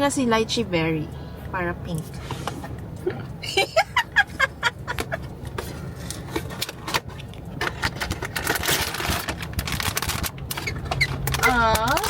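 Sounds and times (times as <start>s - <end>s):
packaging crinkling and scraping: 5.4s - 12.0s.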